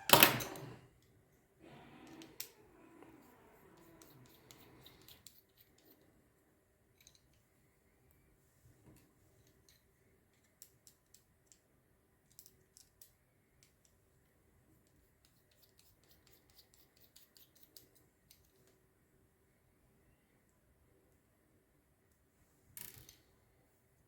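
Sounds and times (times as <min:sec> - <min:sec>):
light clicks of tools handled: 0:06.9 - 0:07.5.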